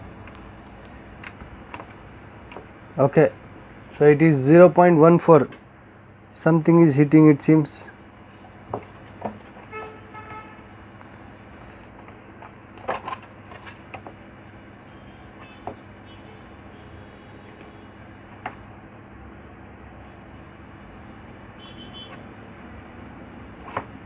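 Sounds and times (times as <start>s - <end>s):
low background hum: 0.0s - 4.8s, 6.4s - 11.9s, 13.2s - 18.7s, 20.2s - 24.0s
faint sharp clicks and taps: 0.2s - 2.8s
short horn-like tone: 6.5s - 11.8s, 20.3s - 24.0s.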